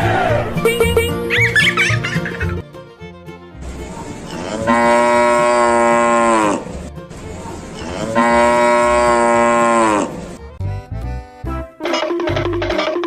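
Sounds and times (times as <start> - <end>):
cow mooing: 4.3 - 6.8, 7.8 - 10.2.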